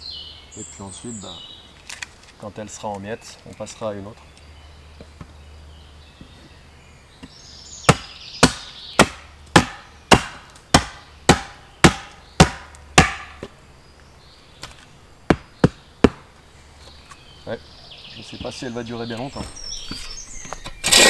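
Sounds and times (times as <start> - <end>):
axe chopping wood: 7.2 - 13.6, 14.6 - 16.4.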